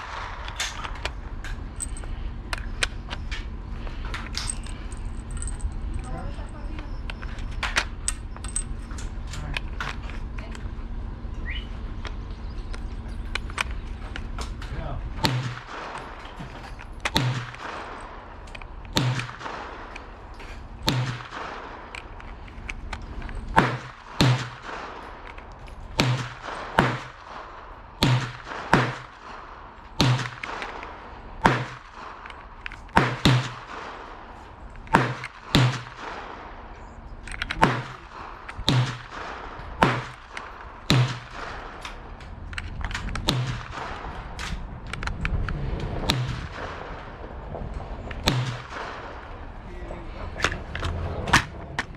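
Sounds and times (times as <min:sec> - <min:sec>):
gunshots with echo: 0:00.0 - 0:02.0, 0:14.8 - 0:22.4, 0:23.4 - 0:44.7, 0:45.5 - 0:51.7.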